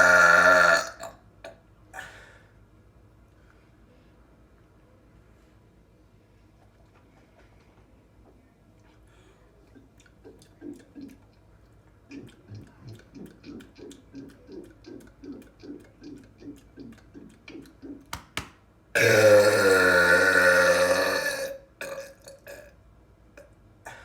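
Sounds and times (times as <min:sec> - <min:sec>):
loud drawn-out burp: 0:00.0 - 0:01.2, 0:19.0 - 0:22.7
person gulping soda: 0:09.7 - 0:18.1, 0:19.0 - 0:22.7.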